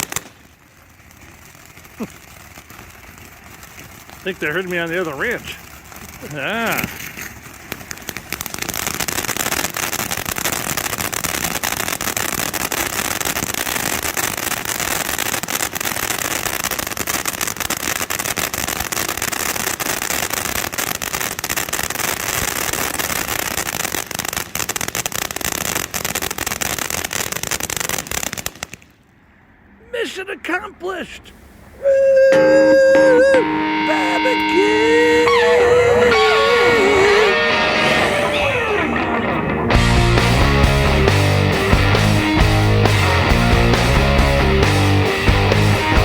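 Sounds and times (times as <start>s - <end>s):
firework fountain crackling: 0.0s - 29.1s, 29.9s - 46.0s.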